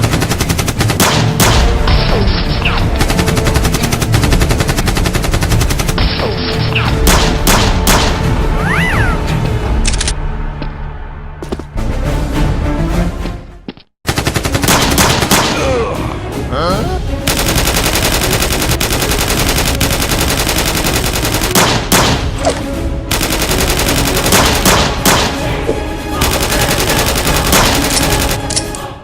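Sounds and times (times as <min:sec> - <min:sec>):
background music: 0:00.0 - 0:29.0
automatic gunfire bursts: 0:17.3 - 0:22.2, 0:23.1 - 0:25.3, 0:26.2 - 0:28.5.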